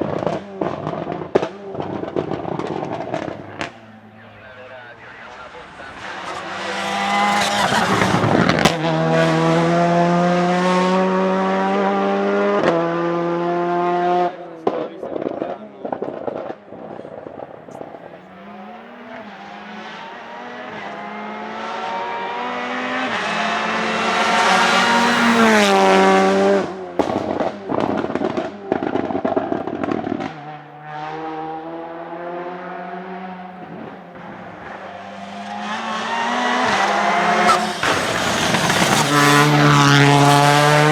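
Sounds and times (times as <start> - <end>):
exhaust crackles and bangs: 0.0 - 3.8, 26.9 - 30.4
race car engine at full throttle: 0.0 - 40.9.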